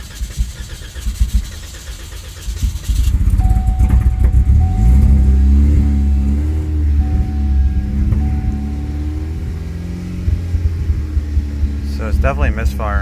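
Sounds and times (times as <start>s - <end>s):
car engine cranking and idling roughly: 0.0s - 13.0s
steady high tone: 3.4s - 10.1s.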